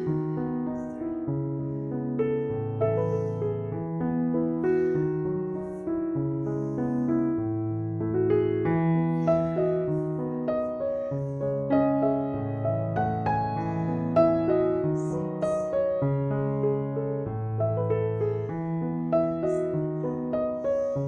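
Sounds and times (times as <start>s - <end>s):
gentle piano piece: 0.0s - 21.0s.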